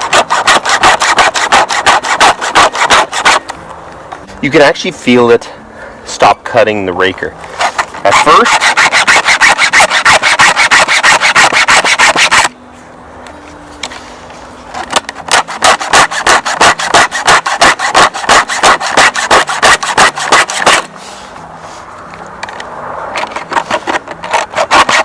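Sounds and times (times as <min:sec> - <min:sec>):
file rasping on chainsaw chain: 0:00.0 - 0:03.5, 0:07.5 - 0:12.6, 0:15.2 - 0:20.9, 0:23.2 - 0:25.0.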